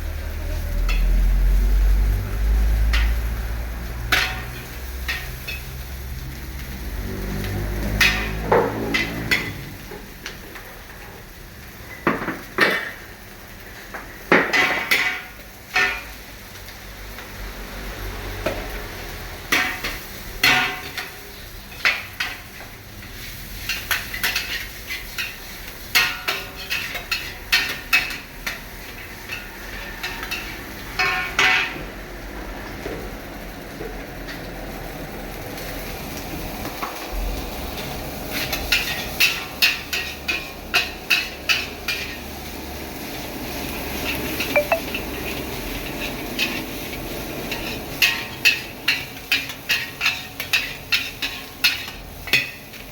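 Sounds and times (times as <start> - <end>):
metal spatula clanking on wok: 4.1 - 5.8, 7.8 - 9.7, 23.7 - 31.8.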